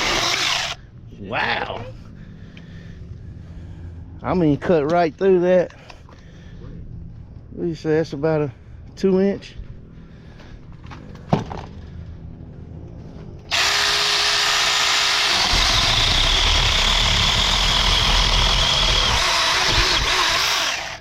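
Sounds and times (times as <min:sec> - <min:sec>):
electric chainsaw cutting wood: 0:00.0 - 0:00.8, 0:13.5 - 0:21.0.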